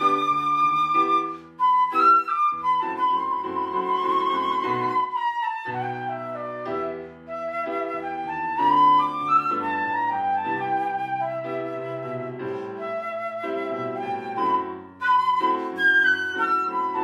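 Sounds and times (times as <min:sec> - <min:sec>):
instrumental music with held notes: 0:00.0 - 0:17.0.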